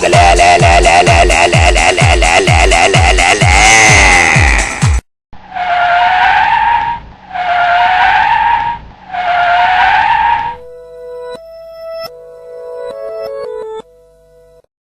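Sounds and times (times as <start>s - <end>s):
electronic dance music: 0.0s - 5.0s.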